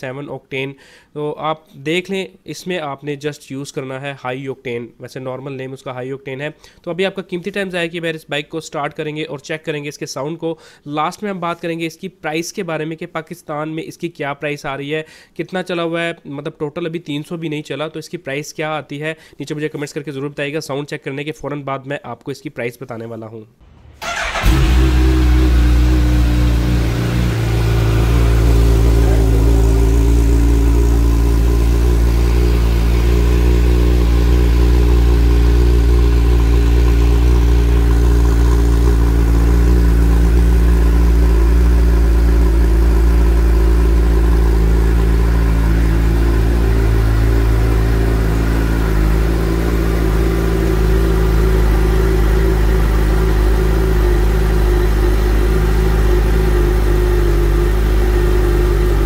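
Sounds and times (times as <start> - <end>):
motorcycle engine idling: 24.0 - 59.0.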